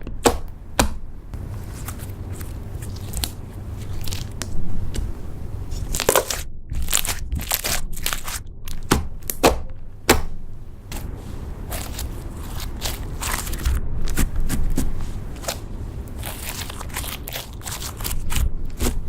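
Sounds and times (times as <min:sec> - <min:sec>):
slime squished by hand: 0:00.0 - 0:19.0
slime crackles and pops: 0:05.8 - 0:10.3.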